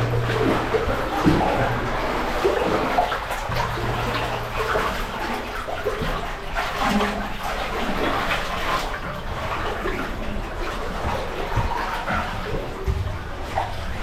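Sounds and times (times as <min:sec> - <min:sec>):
water sloshing and splashing: 0:00.0 - 0:14.0.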